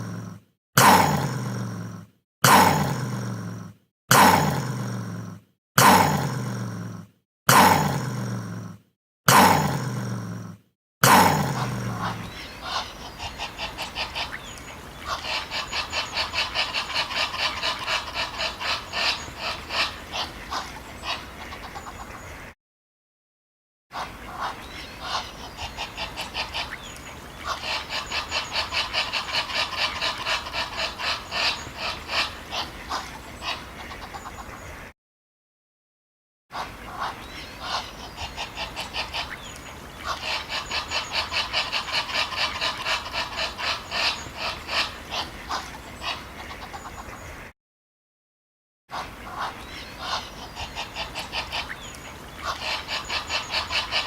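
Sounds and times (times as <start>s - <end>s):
animal quack-like calls: 11.0s - 22.3s, 23.9s - 34.6s, 36.5s - 47.2s, 48.9s - 54.0s.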